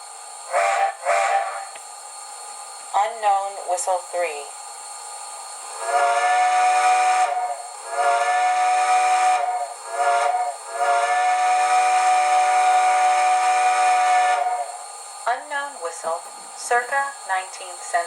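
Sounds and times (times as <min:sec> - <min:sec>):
steady hiss: 0:00.0 - 0:18.0
chime steam whistle blasts: 0:00.5 - 0:01.7, 0:05.7 - 0:14.8.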